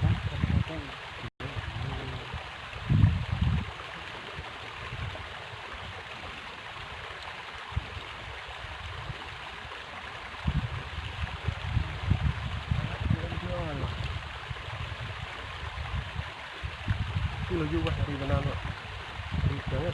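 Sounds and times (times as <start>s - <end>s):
river water flowing: 0.0s - 19.9s.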